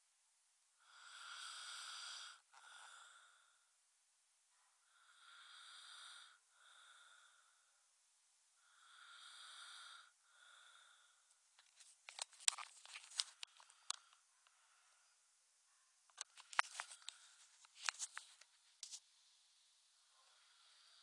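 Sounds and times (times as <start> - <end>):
person snoring softly: 0.8 - 3.7, 4.5 - 7.9, 8.6 - 11.4, 19.9 - 21.0.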